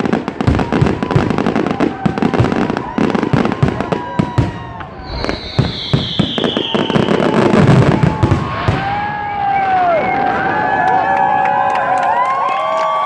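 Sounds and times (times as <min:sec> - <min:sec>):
rumble of firework booms: 0:00.0 - 0:10.3
crackling firework bangs: 0:00.0 - 0:10.8
crowd cheering: 0:00.0 - 0:13.0
firework whistle falling in pitch: 0:00.5 - 0:11.5.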